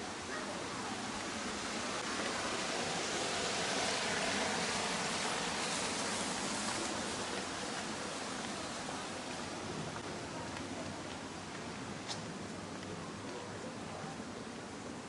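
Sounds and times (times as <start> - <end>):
stream water rushing: 0.0 - 11.5.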